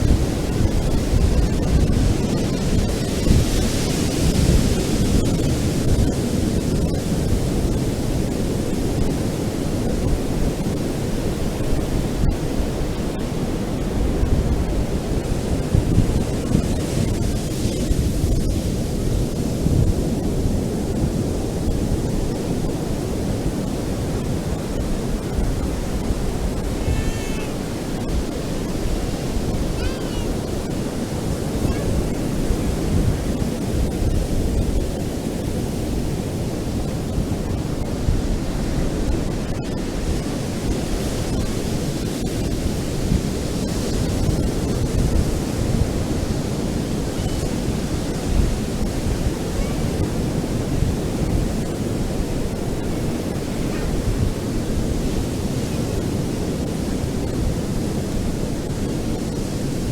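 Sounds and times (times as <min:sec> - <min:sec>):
ocean surf breaking on beach: 0:00.0 - 0:59.9
faint short high calls: 0:26.8 - 0:27.6, 0:29.8 - 0:30.4.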